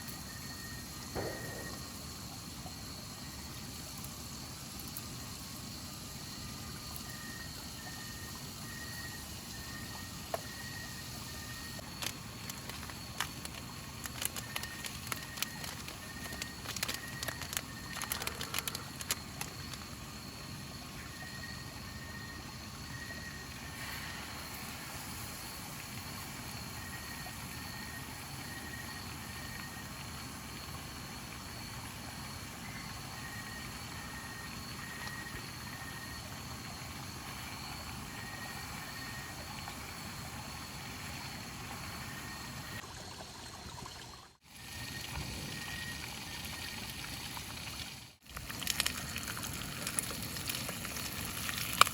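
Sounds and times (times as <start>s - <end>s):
running water rushing: 11.8s - 20.3s.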